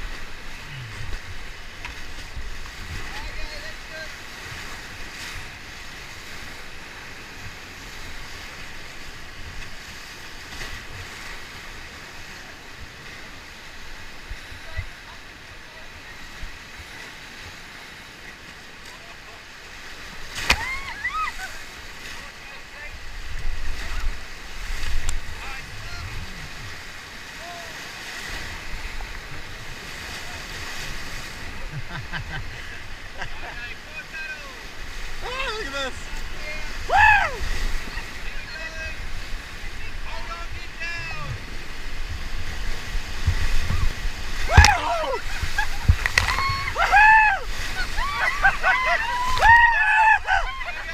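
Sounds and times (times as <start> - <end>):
whitewater rushing: 0.0 - 50.9
wind buffeting microphone: 41.2 - 48.0.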